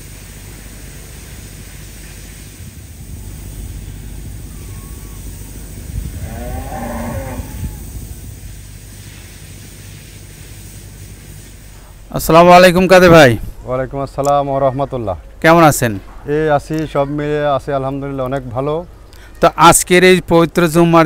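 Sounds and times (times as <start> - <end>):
low steady rumble: 0.0 - 15.4
cow mooing: 6.0 - 7.9.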